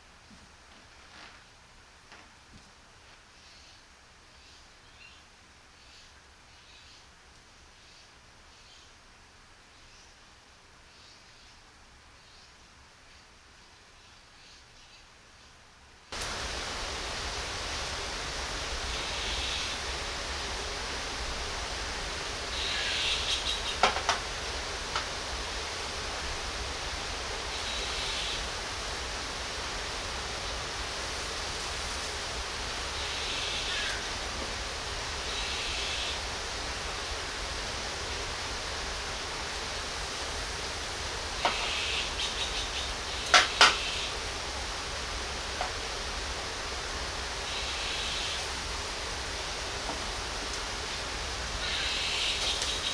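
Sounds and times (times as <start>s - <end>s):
pork sizzling on a grill: 16.2s - 52.9s.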